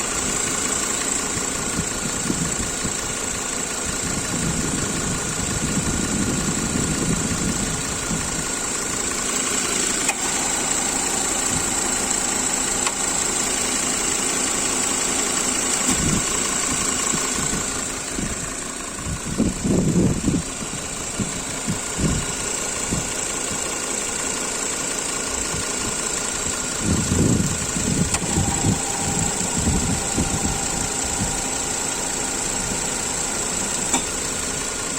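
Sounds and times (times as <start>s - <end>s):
car engine running: 0.0s - 34.9s.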